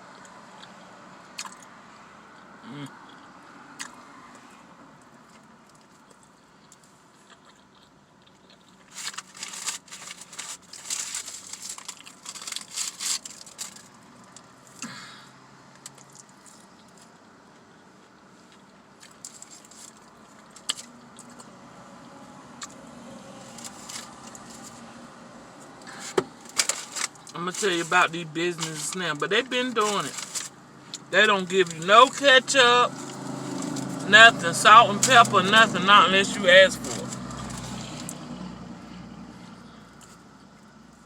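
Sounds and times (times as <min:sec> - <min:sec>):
paper packaging crinkling: 0:08.9 - 0:13.9, 0:23.5 - 0:24.8, 0:26.0 - 0:30.5.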